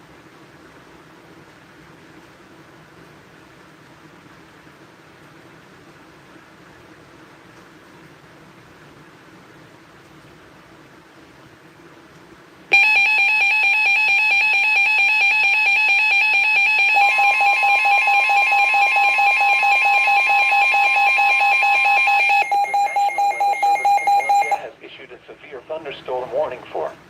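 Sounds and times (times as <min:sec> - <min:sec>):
faint static: 0:00.0 - 0:27.0
higher electronic tone: 0:12.7 - 0:24.7
rapidly pulsing electronic alarm tone: 0:12.7 - 0:24.7.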